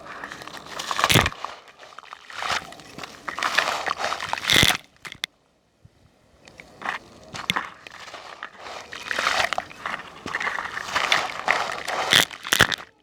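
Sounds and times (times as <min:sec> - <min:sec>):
crunchy balls crumbling: 0:00.0 - 0:05.3, 0:06.7 - 0:13.0.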